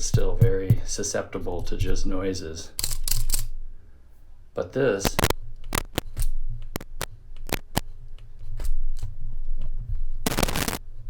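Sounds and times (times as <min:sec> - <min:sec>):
steady low hum: 0:00.0 - 0:11.0
cable crackling clicks: 0:05.0 - 0:07.9, 0:10.3 - 0:10.8.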